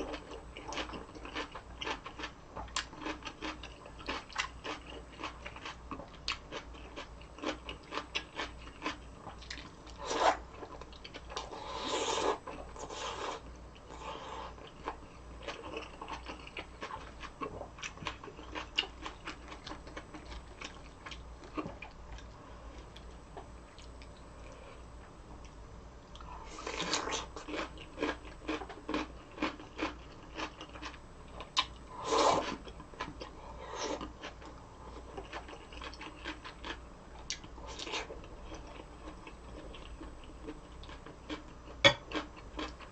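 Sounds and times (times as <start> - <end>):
slurping or crunching: 9.9 - 10.4, 11.4 - 14.7, 32.0 - 32.6.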